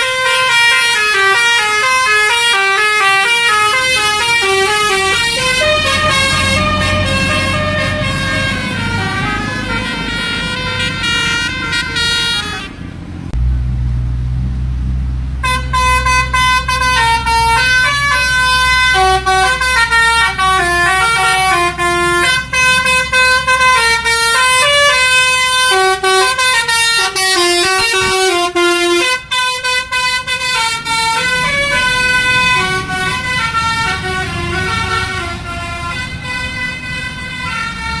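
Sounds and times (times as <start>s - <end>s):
multi-tone bus horn melody: 0.0s - 13.0s, 15.4s - 38.0s
low steady rumble: 12.6s - 20.7s.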